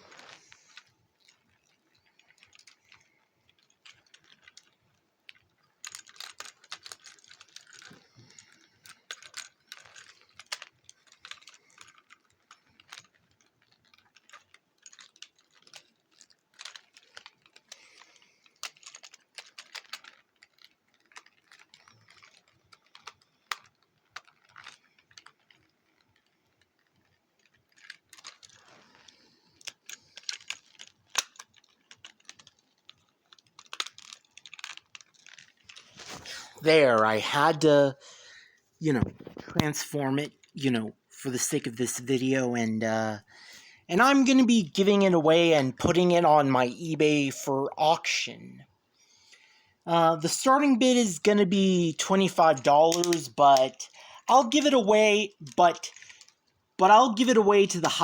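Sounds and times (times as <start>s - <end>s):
handling rustle: 0.0s - 37.7s, 50.4s - 58.0s
plastic toy clicking and snapping: 0.6s - 28.7s, 29.6s - 35.8s, 52.1s - 54.8s.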